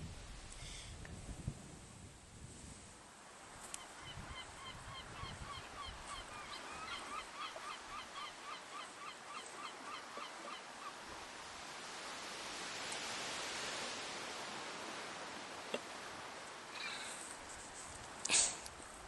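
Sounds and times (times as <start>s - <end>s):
steady hiss: 11.1s - 19.0s.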